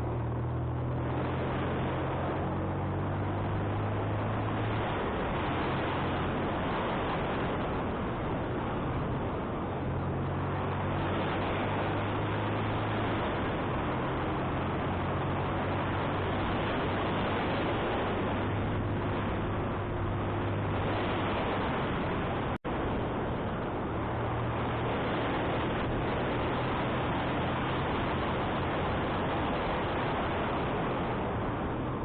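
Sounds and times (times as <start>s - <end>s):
wind rushing over microphone: 0.0s - 32.0s.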